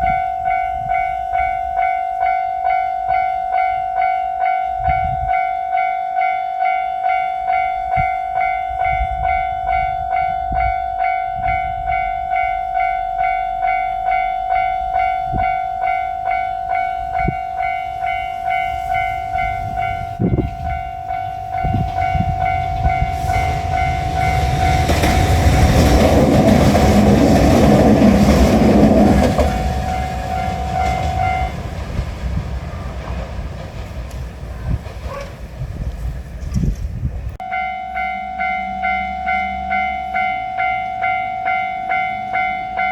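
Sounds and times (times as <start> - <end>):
railway crossing alarm pulsing: 0.0 - 36.1, 37.4 - 42.9
train rumble and rail clatter: 0.0 - 42.9.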